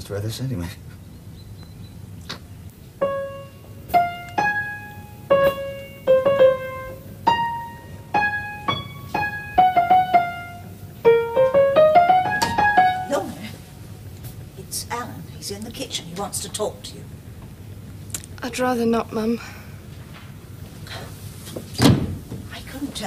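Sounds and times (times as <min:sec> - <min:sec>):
piano melody: 0:03.0 - 0:14.2.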